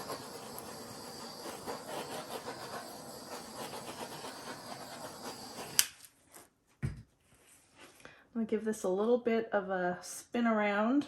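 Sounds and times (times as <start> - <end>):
torch flame hissing: 0.0 - 6.1
light crackle: 0.0 - 6.5.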